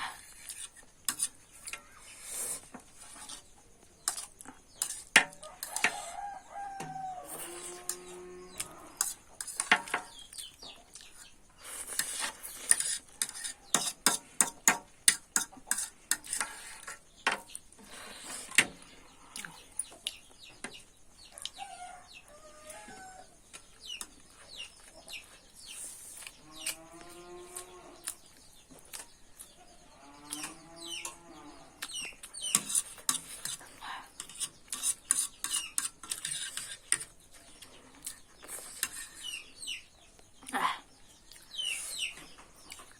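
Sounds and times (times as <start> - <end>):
utensil scraping dish: 0.3 - 6.2, 7.4 - 10.2, 11.8 - 18.8, 32.4 - 37.2, 38.6 - 39.4.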